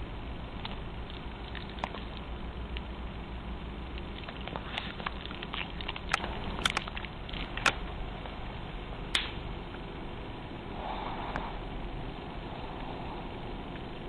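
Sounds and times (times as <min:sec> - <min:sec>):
steady hiss: 0:06.1 - 0:14.0.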